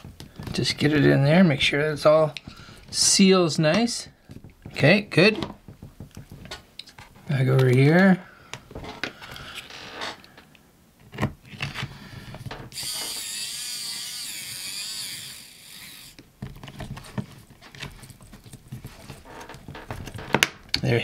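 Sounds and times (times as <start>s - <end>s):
electric screwdriver whirring: 12.7s - 16.2s.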